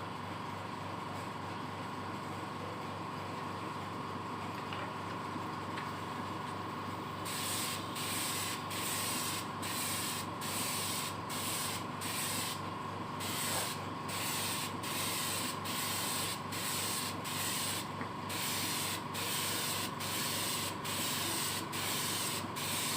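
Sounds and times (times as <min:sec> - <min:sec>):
machine hum with high whine: 0:00.0 - 0:22.9
paint spraying hiss: 0:07.3 - 0:12.6, 0:13.2 - 0:22.9.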